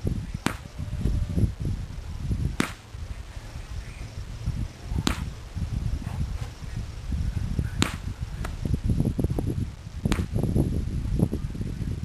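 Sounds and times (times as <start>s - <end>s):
firework crack: 0.0s - 0.8s, 1.9s - 3.2s, 4.9s - 10.6s
low rumble: 0.0s - 12.0s.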